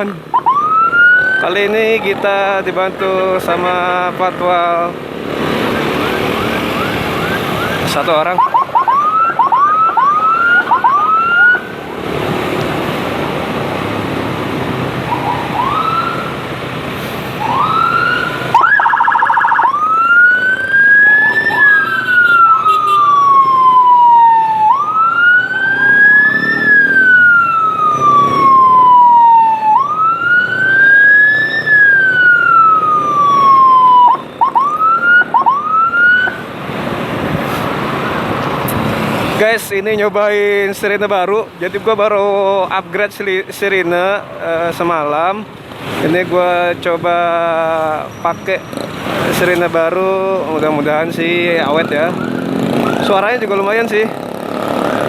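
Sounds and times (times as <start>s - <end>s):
vehicle and road noise: 0.0s - 55.0s
electronic siren whooping and wailing: 0.3s - 1.6s, 5.6s - 11.8s, 15.1s - 16.4s, 17.4s - 36.4s, 51.5s - 53.4s.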